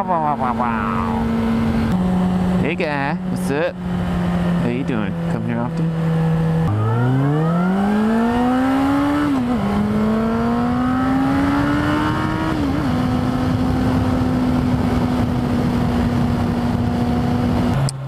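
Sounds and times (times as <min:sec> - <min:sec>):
motorcycle engine accelerating: 0:00.0 - 0:18.0
wind rushing over microphone: 0:07.7 - 0:17.9.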